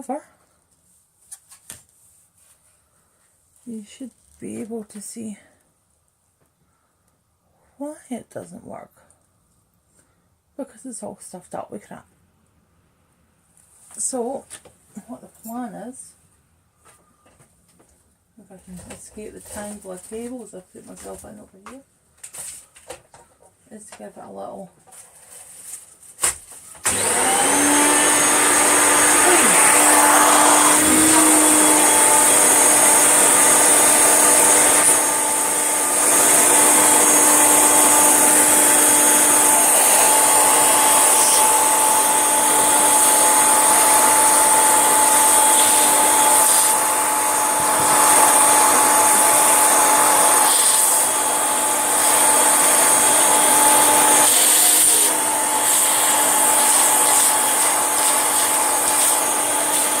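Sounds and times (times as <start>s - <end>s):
upright vacuum cleaner running: 26.8s - 60.0s.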